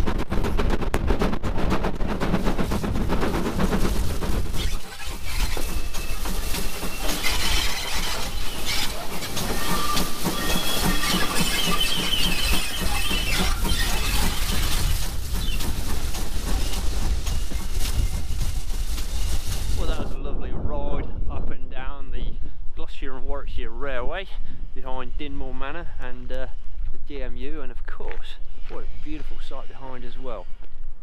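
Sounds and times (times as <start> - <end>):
train wheels clattering over rails: 0.0 - 20.1
high squeal of wheels or brakes: 4.6 - 15.8.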